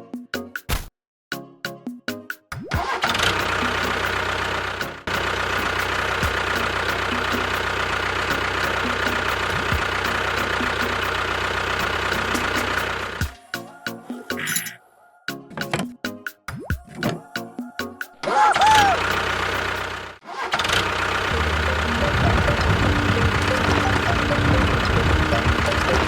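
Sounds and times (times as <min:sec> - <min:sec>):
small motor running: 0:03.1 - 0:13.3, 0:19.1 - 0:26.0.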